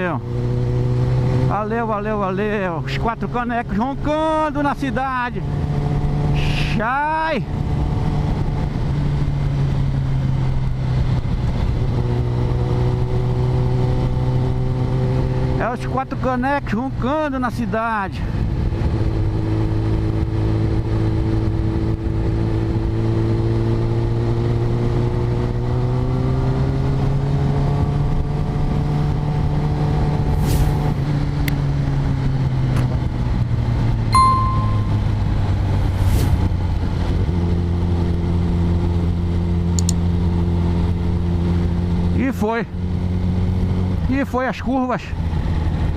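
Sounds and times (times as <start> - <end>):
short clicks: 39.8 - 40.0.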